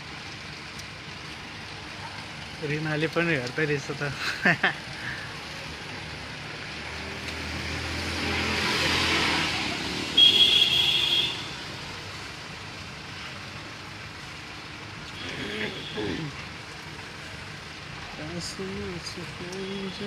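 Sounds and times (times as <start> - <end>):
steady rain: 0.0 - 20.0
vehicle passing on wet road: 0.4 - 14.4.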